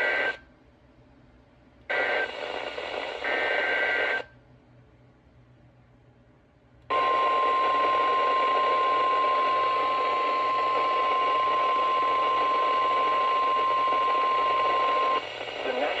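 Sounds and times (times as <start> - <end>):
radio static hiss: 0.0 - 0.4, 1.9 - 4.3, 6.9 - 16.0
steady high alarm tone: 6.9 - 15.4.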